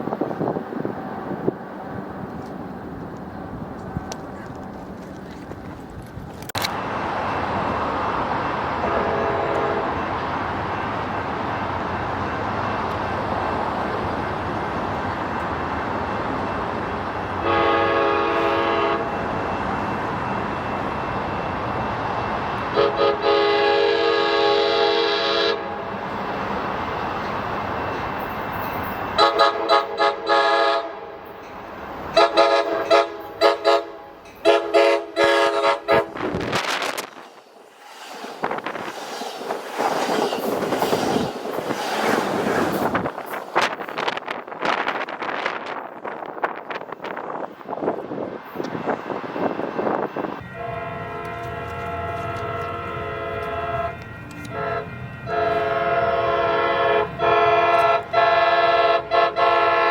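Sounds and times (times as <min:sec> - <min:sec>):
rush of moving train: 0:00.0 - 0:59.9
train air horn: 0:08.8 - 0:10.0, 0:17.4 - 0:19.2, 0:22.7 - 0:25.8, 0:29.2 - 0:31.3, 0:32.1 - 0:36.9, 0:50.4 - 0:59.9.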